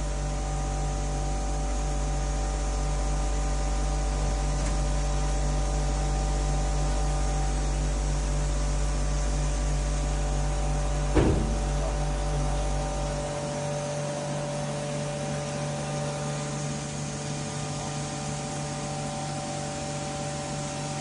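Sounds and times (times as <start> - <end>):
deep low hum: 0.0 - 14.2
sharp knock: 11.1 - 11.6.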